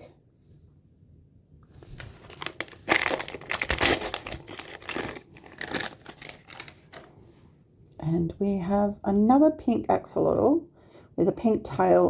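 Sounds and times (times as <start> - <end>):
plastic packaging crinkling: 1.8 - 7.1.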